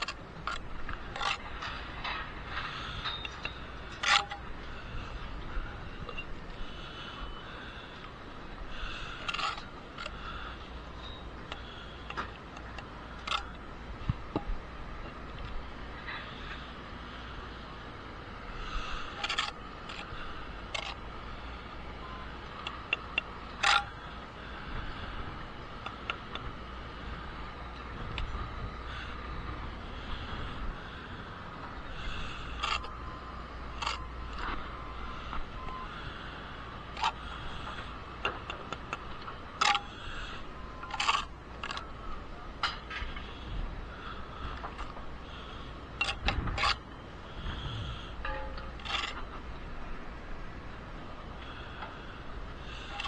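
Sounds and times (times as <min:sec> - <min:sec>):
low outdoor rumble: 0:00.0 - 0:53.0
sharp clicks and knocks: 0:48.2 - 0:49.4.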